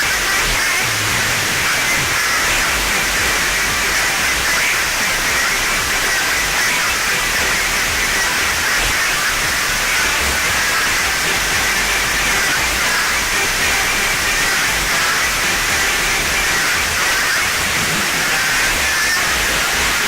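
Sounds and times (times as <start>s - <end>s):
static-like hiss: 0.0s - 20.0s.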